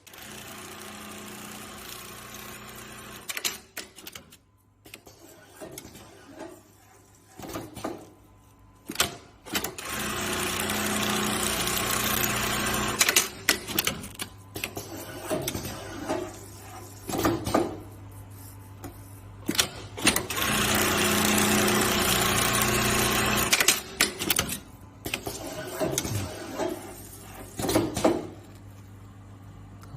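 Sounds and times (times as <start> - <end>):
sewing machine stitching: 9.0 - 14.0, 19.5 - 28.0.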